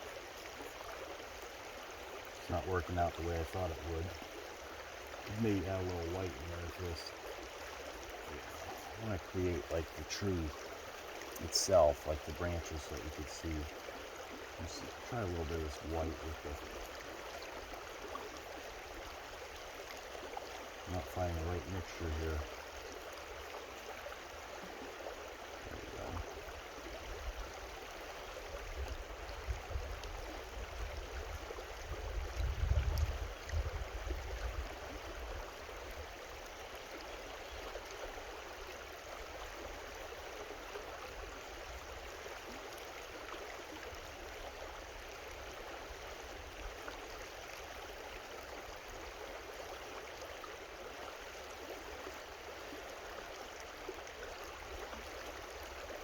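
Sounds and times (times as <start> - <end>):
creek babbling: 0.0 - 56.0.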